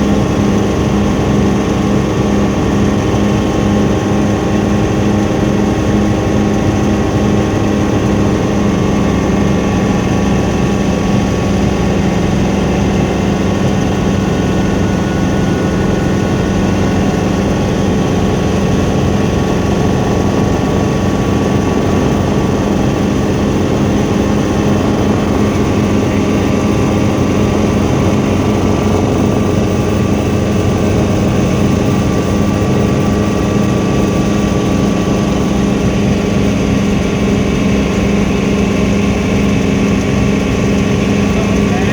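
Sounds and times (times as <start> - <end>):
helicopter engine and rotor: 0.0 - 41.9.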